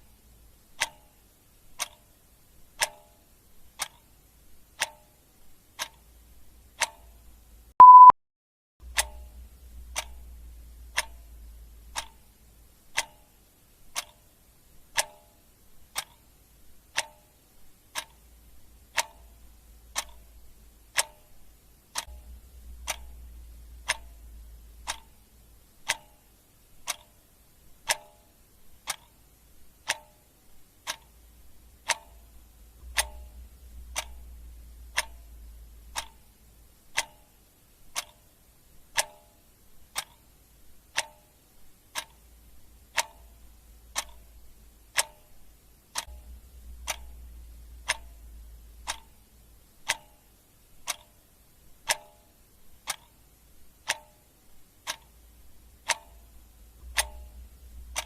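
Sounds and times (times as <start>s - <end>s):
clock ticking: 0.0s - 8.1s, 8.8s - 58.0s
short high beep: 7.8s - 8.2s.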